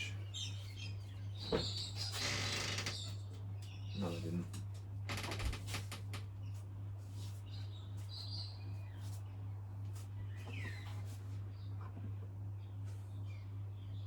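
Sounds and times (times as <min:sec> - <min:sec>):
birds chirping and calling: 0:00.0 - 0:04.4.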